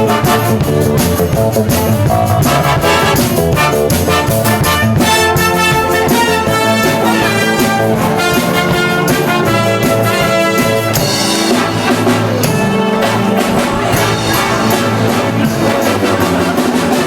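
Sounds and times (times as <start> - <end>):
bass line: 0.0 - 17.0
regular drum beat: 0.0 - 17.0
trumpets and trombones: 0.0 - 17.0.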